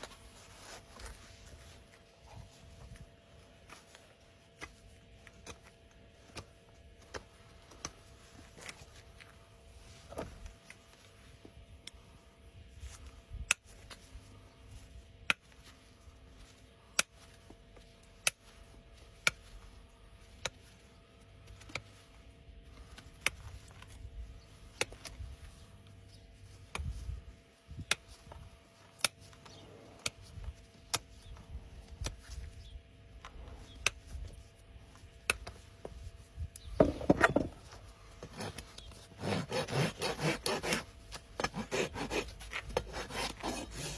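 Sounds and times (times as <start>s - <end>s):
rasping on hoof: 38.2s - 43.9s.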